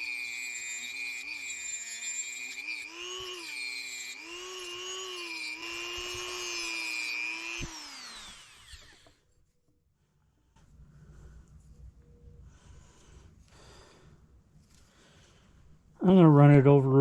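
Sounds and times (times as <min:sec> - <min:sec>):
rotary tool whining: 0:00.0 - 0:09.5.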